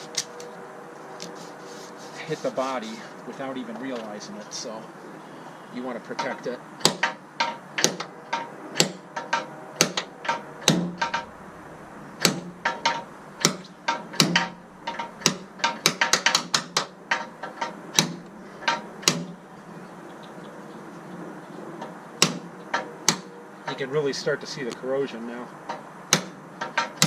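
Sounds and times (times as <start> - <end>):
hammer tapping on metal: 6.2 - 11.3, 12.2 - 19.4, 25.7 - 27.0.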